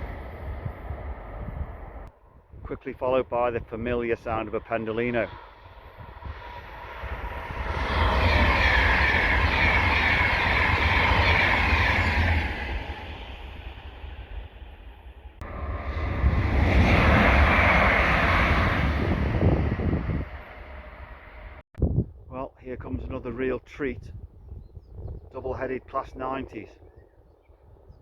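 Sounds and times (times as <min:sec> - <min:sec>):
electric train passing at speed: 0:00.0 - 0:02.6, 0:03.7 - 0:21.6.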